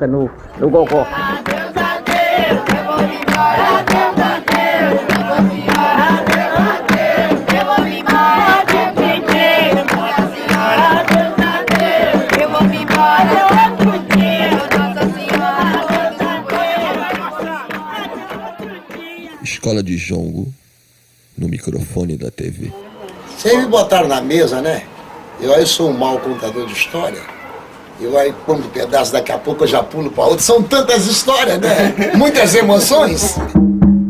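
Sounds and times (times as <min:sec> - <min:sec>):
voices singing together: 0:00.5 - 0:19.7, 0:31.4 - 0:33.5
hand drums beating: 0:00.9 - 0:19.4, 0:31.8 - 0:34.0.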